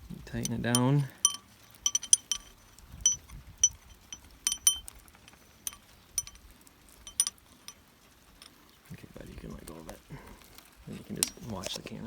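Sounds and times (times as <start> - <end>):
metallic clinks: 0.3 - 8.6, 11.2 - 11.7.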